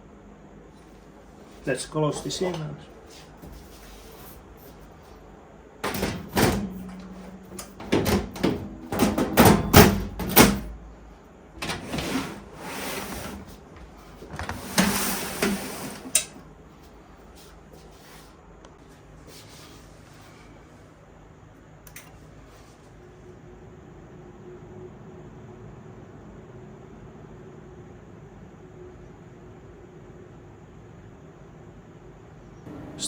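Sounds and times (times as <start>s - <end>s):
metal lid knocking and clattering: 5.8s - 10.6s
metal lid scraping slide: 11.6s - 13.5s, 14.4s - 16.3s.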